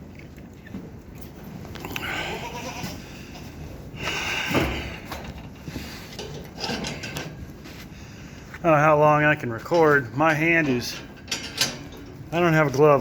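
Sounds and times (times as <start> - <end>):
goats bleating: 2.0 - 3.3.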